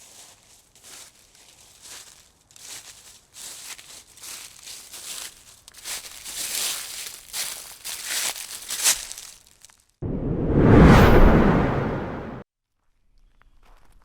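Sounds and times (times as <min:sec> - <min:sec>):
footsteps crunching on loose surface: 0:00.0 - 0:09.9.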